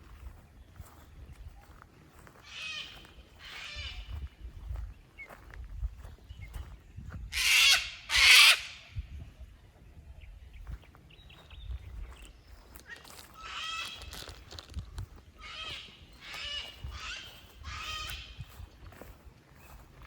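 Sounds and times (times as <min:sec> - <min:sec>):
harsh bird calls: 0:15.3 - 0:18.8.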